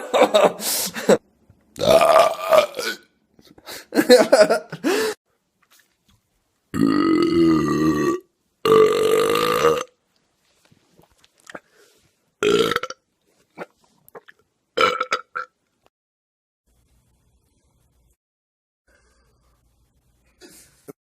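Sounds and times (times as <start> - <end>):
person burping loudly: 1.8 - 3.1, 6.7 - 10.0, 12.4 - 13.0, 14.8 - 15.6.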